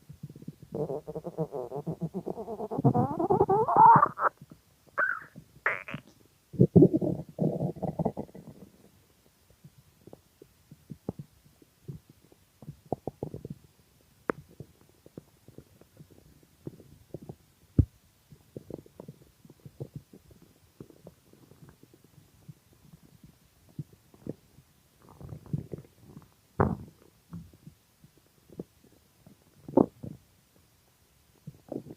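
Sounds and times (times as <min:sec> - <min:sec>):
stomach gurgling and popping: 0:00.0 - 0:30.7, 0:31.4 - 0:31.9.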